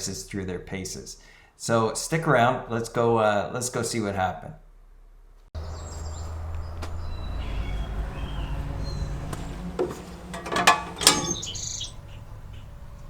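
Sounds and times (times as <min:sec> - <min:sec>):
birds chirping: 0:05.6 - 0:13.0.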